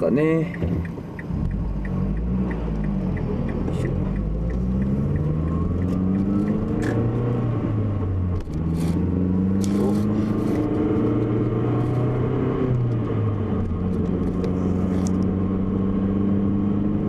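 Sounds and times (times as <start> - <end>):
light regular ticking: 0.0 - 7.4
car engine drone accelerating: 0.0 - 17.0.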